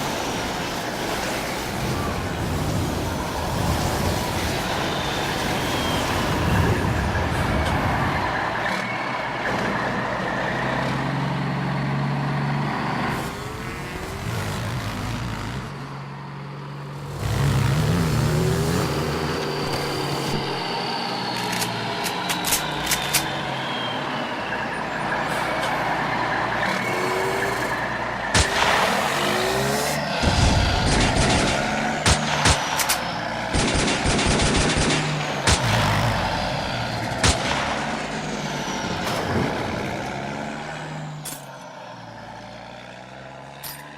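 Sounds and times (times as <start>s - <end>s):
heavy vehicle engines revving: 0.0s - 43.9s
sharp cracks: 30.7s - 35.9s, 37.0s - 38.1s.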